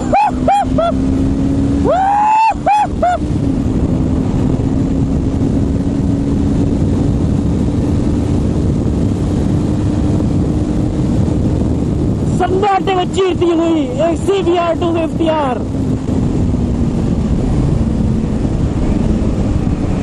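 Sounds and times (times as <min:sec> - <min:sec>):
motorcycle engine running: 0:00.0 - 0:20.0
wind rush on microphone: 0:00.0 - 0:20.0.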